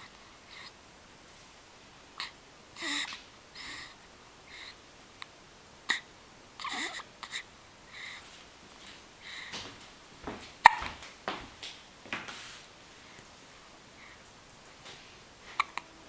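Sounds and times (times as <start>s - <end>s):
person hiccuping: 10.6s - 10.9s.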